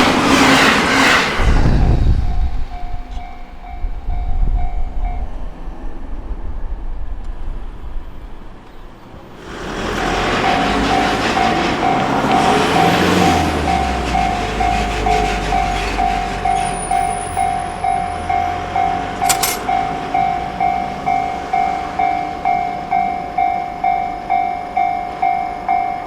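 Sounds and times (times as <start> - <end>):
train rumble: 0.0 - 26.0
level crossing alarm ringing: 10.3 - 26.0.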